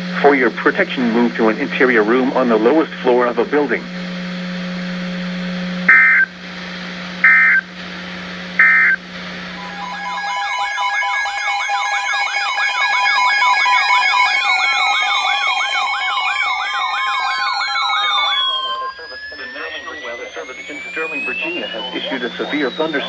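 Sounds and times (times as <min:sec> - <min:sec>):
harsh two-tone data warbles: 0:05.9 - 0:06.3, 0:07.2 - 0:07.6, 0:08.6 - 0:23.0
wailing siren tone: 0:07.2 - 0:07.6, 0:08.6 - 0:23.0
steady alert tones: 0:08.6 - 0:23.0.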